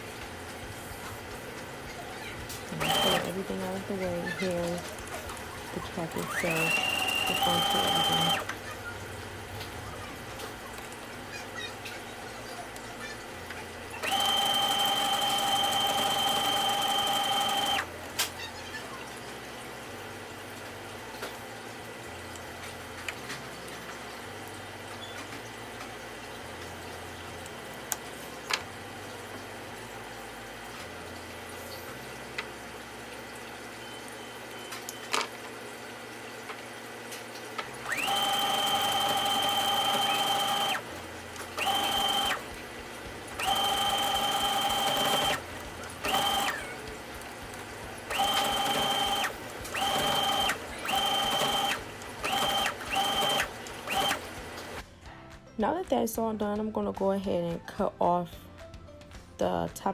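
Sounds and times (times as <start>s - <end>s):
electric sewing machine stitching: 0.0s - 18.8s, 37.5s - 54.8s.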